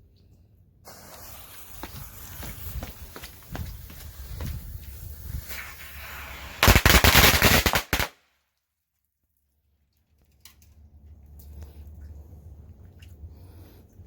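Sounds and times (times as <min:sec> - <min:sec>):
firecrackers banging: 0:00.9 - 0:08.1.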